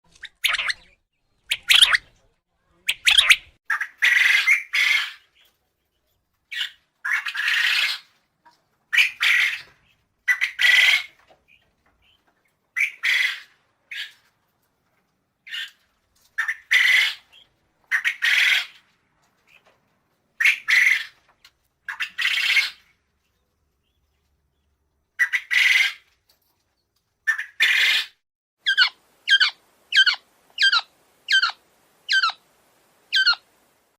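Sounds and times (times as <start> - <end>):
quail calling: 1.5 - 2.0, 27.3 - 32.4, 33.1 - 33.4.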